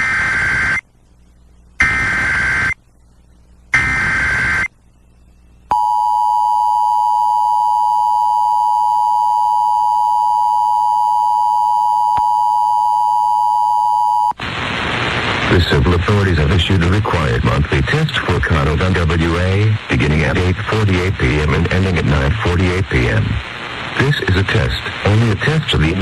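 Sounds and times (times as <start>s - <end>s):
data bursts: 1.8s - 2.8s, 3.7s - 4.7s.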